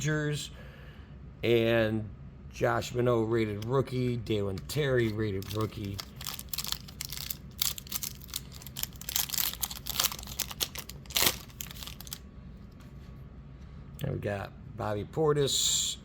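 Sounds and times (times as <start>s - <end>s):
wrapper crinkling and tearing: 4.9s - 12.2s
sharp wrapper rip: 5.0s - 12.2s.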